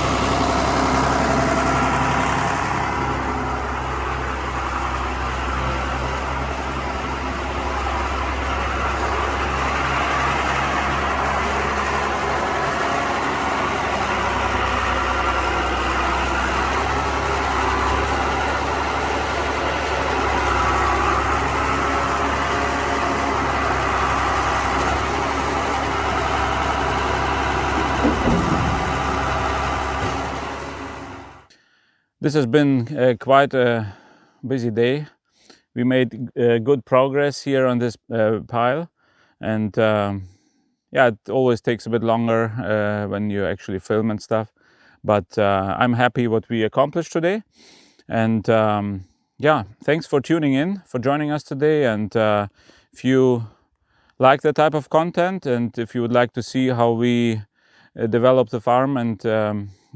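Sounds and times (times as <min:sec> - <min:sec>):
tractor diesel engine running: 0:00.0 - 0:31.5
clunk: 0:24.5 - 0:31.5.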